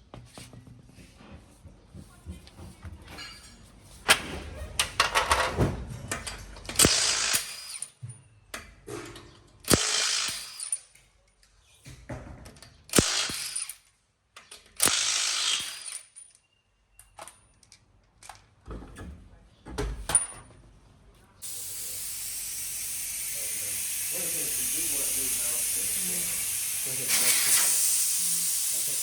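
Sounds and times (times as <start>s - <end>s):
power wrench click: 6.7s - 7.9s
power wrench bursts: 6.7s - 8.0s, 9.6s - 10.9s, 12.9s - 13.8s, 14.8s - 16.2s, 21.4s - 29.0s.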